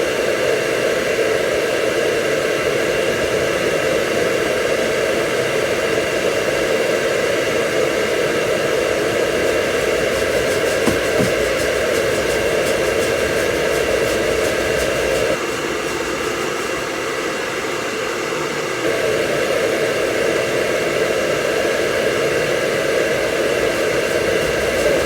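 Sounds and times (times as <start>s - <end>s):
hair dryer blowing: 6.1s - 25.0s.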